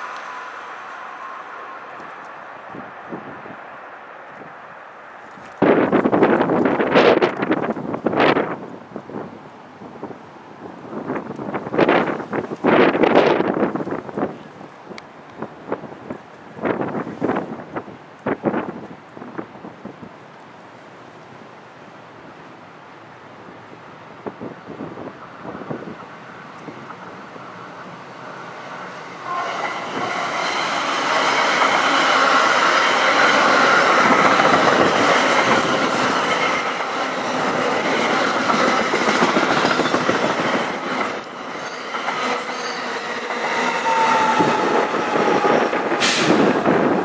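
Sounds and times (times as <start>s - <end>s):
high squealing tones: 29.3s - 47.0s.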